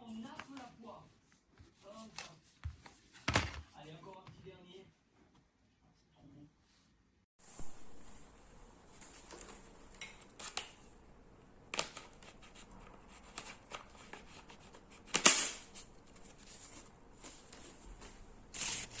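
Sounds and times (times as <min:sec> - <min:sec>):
objects being handled: 0:00.0 - 0:00.9, 0:01.5 - 0:04.4.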